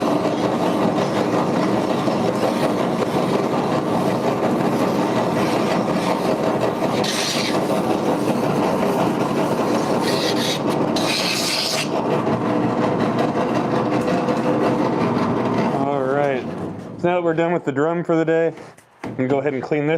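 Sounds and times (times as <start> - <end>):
drum sander running: 0.0 - 19.8
rasping hisses on sanding drum: 6.9 - 8.2, 9.5 - 11.9.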